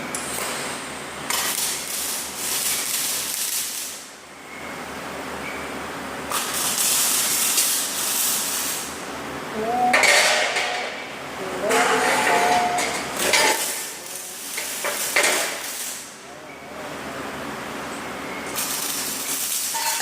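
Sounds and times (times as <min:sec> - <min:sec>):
welding arc hissing: 0:00.1 - 0:04.2, 0:06.3 - 0:09.2, 0:11.4 - 0:16.3, 0:18.4 - 0:20.0.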